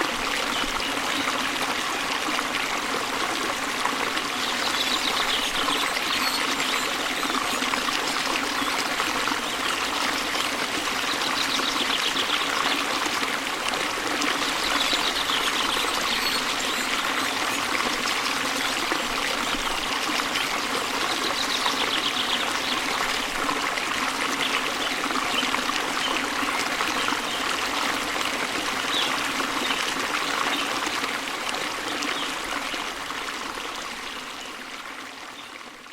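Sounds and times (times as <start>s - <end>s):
stream water splashing: 0.0s - 35.9s
faint bird chirps: 14.8s - 17.4s.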